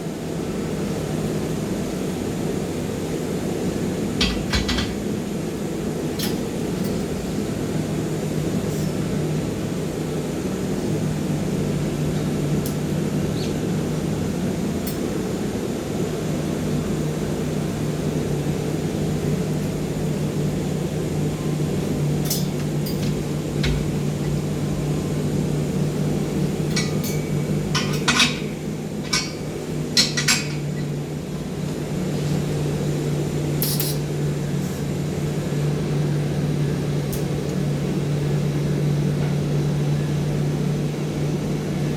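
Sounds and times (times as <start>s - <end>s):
low machine hum: 0.0s - 41.9s
metallic clinks: 22.2s - 24.6s, 26.7s - 30.9s, 33.6s - 34.0s.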